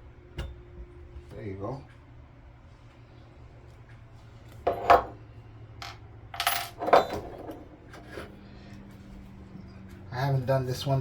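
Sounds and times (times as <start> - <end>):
metal parts clinking on hard surface: 5.8 - 7.5.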